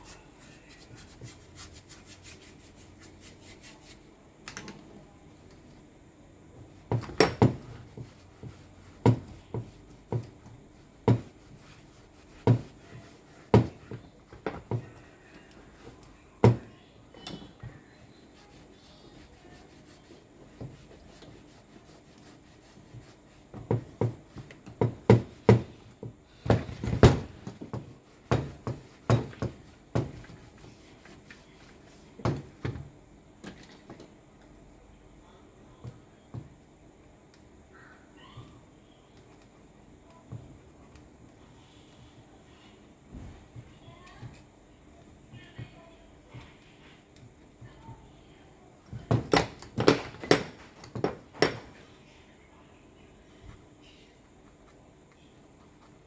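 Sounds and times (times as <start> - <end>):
hard objects knocking and clacking: 49.0 - 51.8.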